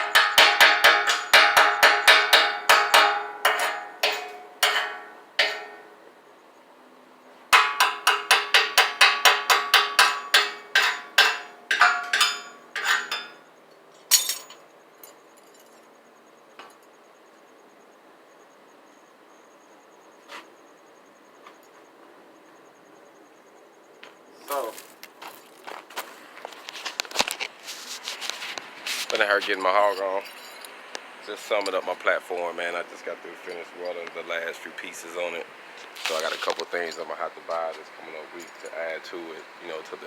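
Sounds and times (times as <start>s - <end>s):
hammer striking ringing steel: 0.0s - 6.0s, 7.6s - 13.4s.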